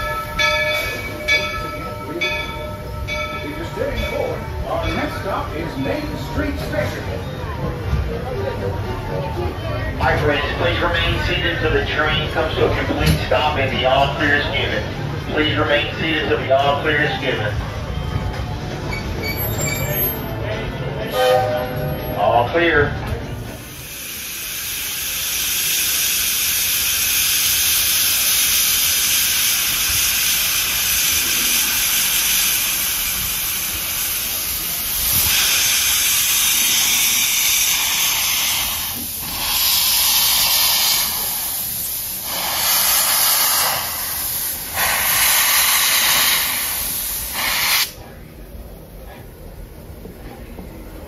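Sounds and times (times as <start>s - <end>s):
steam locomotive venting steam: 0.0s - 9.3s, 23.2s - 51.0s.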